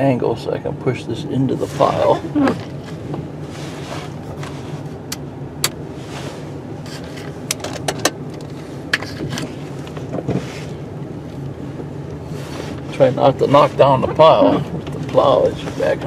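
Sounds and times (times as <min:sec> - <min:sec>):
truck engine running at low revs: 0:00.0 - 0:16.0
sharp clicks and rattles: 0:07.0 - 0:10.3.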